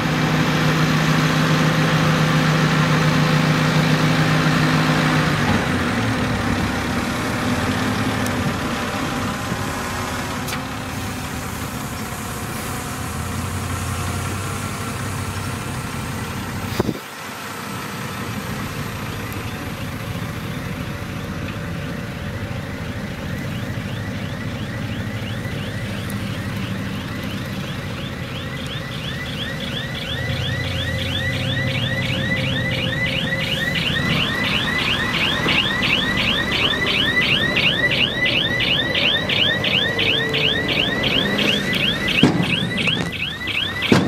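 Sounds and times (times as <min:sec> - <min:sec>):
diesel engine rumble: 0:00.0 - 0:44.0.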